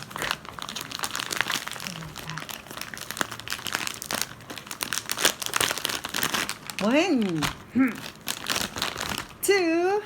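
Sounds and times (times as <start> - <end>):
gift wrapping crinkling: 0.0 - 9.6.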